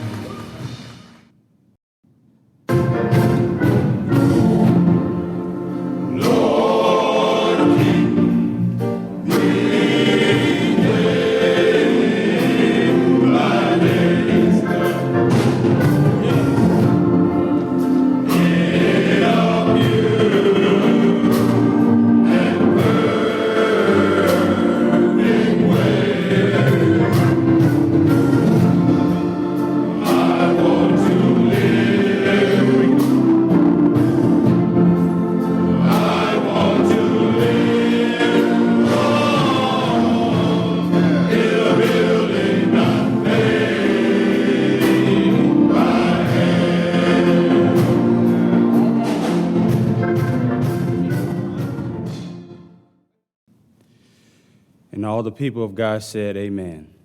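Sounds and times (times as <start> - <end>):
instrumental accompaniment with beat: 2.6 - 52.8
male chorus singing gospel: 5.8 - 49.8.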